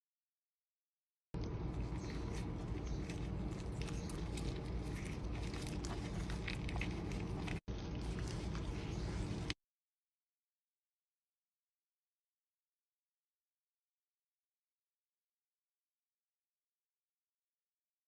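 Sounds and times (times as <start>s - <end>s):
low hum: 1.4s - 9.6s
small clicks and crackles: 1.4s - 9.6s.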